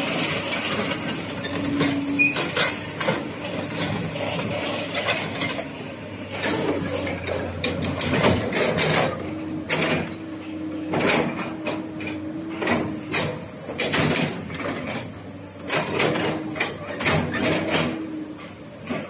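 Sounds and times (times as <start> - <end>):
excavator engine running: 0.0 - 19.0
sharp knocks and clanks: 6.4 - 10.2, 10.9 - 15.0, 15.6 - 18.0.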